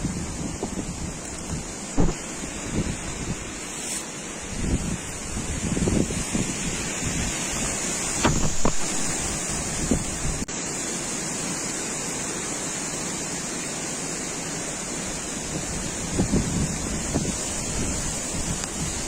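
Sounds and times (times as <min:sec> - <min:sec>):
strong wind on microphone: 0:00.0 - 0:03.7, 0:04.4 - 0:10.5, 0:15.4 - 0:19.0.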